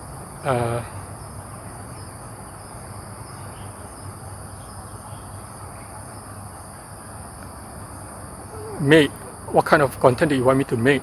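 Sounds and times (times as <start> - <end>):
insects chirring: 0.0 - 11.0
low background hum: 3.3 - 11.0.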